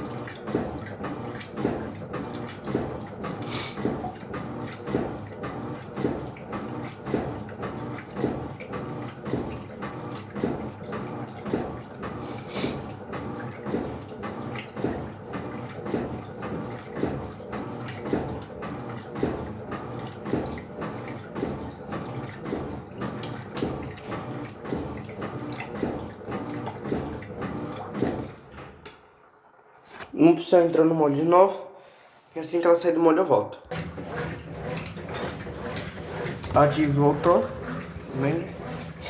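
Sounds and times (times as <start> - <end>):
washing machine sloshing: 0.0 - 39.0.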